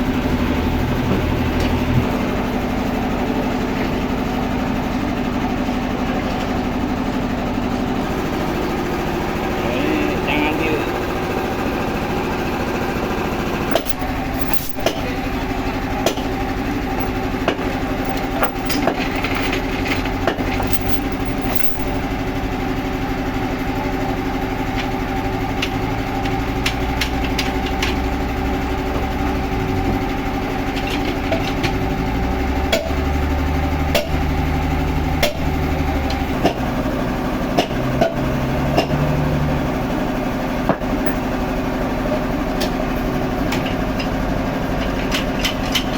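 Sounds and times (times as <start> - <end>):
engine running: 0.0 - 23.1, 23.7 - 43.5
sharp knocks and clatters: 13.7 - 15.1, 17.0 - 22.2.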